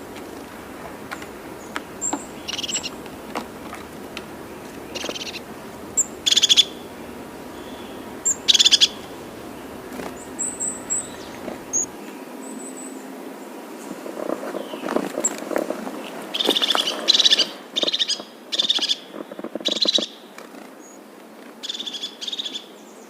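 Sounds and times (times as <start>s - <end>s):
bird high chips: 0.0s - 11.9s
bird rattling trills: 0.0s - 12.0s.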